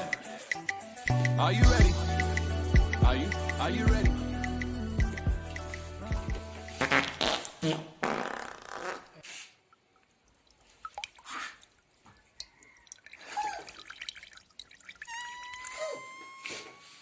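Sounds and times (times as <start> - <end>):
water dripping and splashing: 9.7 - 15.9
thin whistling tone: 15.1 - 17.0.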